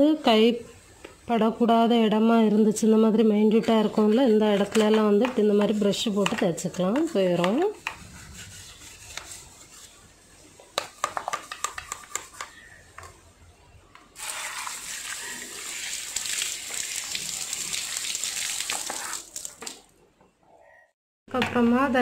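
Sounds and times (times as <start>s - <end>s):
water running from a tap: 14.2s - 19.8s.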